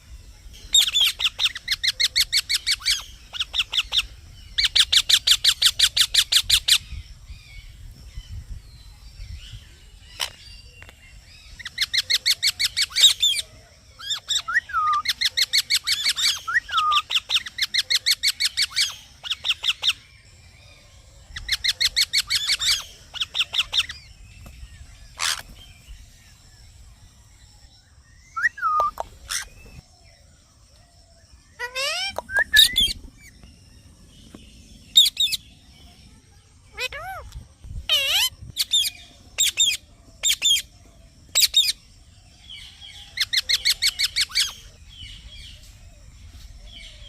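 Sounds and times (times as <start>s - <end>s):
parrot shrill chirps: 14.0s - 20.0s, 25.2s - 25.4s, 28.3s - 29.5s, 31.6s - 33.0s, 36.7s - 37.2s, 37.9s - 40.6s.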